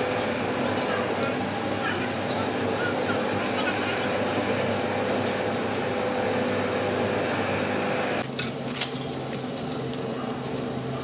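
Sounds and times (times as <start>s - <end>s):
low machine hum: 0.0s - 8.2s.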